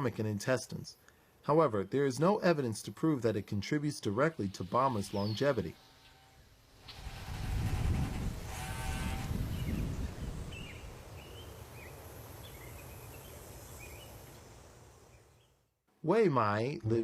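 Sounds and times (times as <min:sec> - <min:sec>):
small birds chirping: 0:04.4 - 0:05.7, 0:09.5 - 0:14.4.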